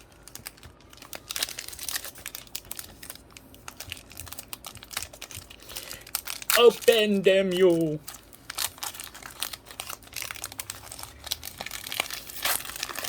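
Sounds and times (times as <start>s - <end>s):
plastic wrapper crinkling: 0.0s - 13.0s.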